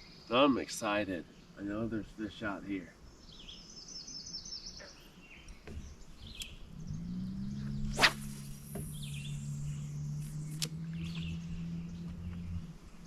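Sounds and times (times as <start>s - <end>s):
birds chirping: 0.0s - 13.0s
fishing rod whooshing: 7.7s - 9.5s
line hissing off reel: 7.8s - 9.7s.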